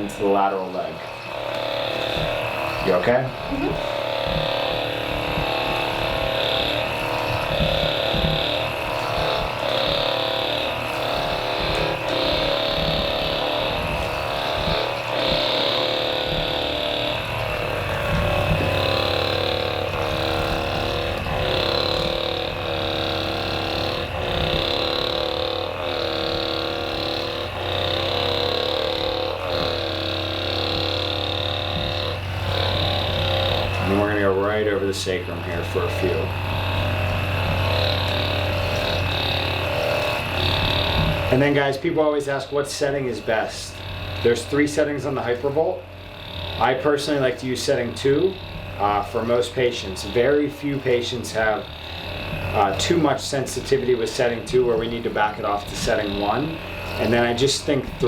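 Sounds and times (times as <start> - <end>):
massage gun motor whine: 0.0 - 58.0.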